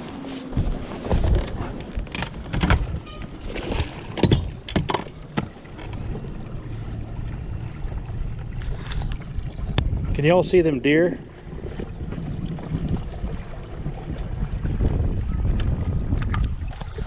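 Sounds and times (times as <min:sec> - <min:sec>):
water noise: 0:00.0 - 0:17.0
wind: 0:00.0 - 0:17.0
low steady hum: 0:01.4 - 0:17.0
knocks against boat: 0:04.1 - 0:06.2.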